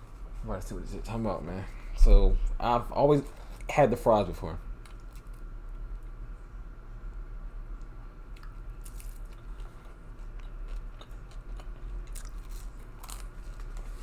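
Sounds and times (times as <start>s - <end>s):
person chewing fries: 4.8s - 5.9s, 7.8s - 14.0s.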